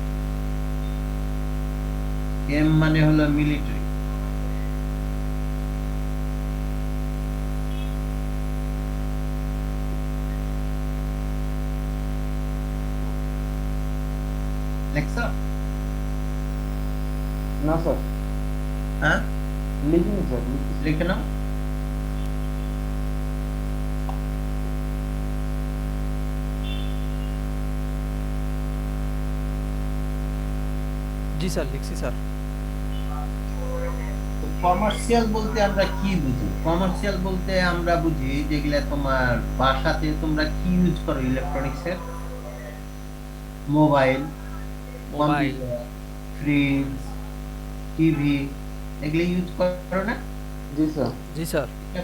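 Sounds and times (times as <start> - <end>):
electrical mains hum: 0.0 - 52.0
background hiss: 32.9 - 52.0.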